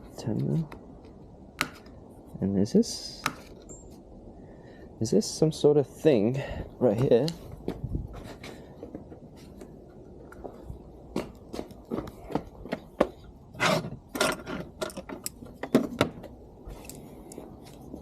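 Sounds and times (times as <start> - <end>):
clinks of hand tools and metal parts: 13.8 - 16.0.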